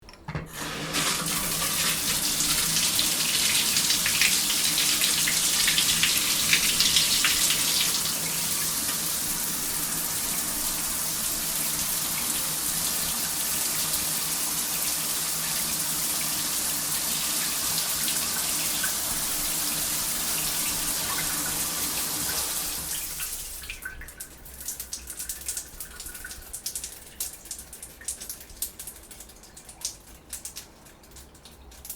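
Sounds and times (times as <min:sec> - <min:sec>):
shower spraying: 0:00.5 - 0:23.8
water dripping: 0:01.0 - 0:16.4, 0:17.2 - 0:31.9.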